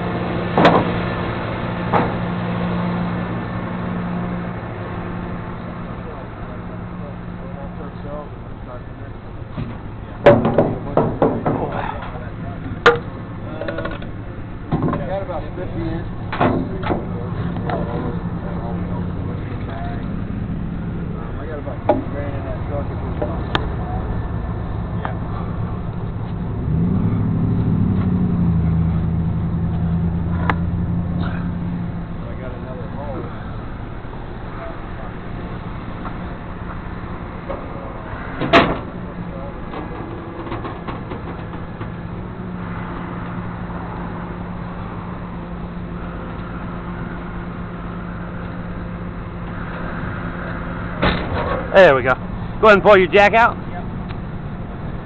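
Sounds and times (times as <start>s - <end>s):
truck engine running: 0.0s - 55.0s.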